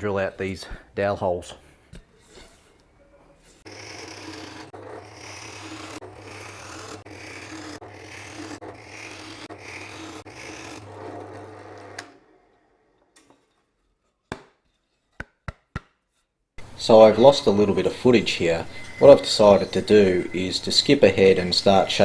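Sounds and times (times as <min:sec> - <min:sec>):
rasping strokes on wood: 0:01.8 - 0:12.0, 0:16.6 - 0:22.0.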